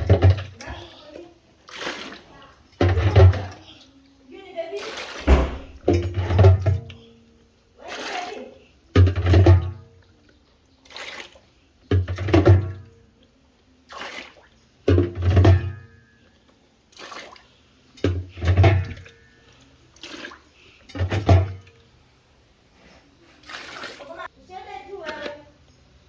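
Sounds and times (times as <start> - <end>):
water sloshing in washing machine: 0.0 - 22.0, 22.9 - 25.6.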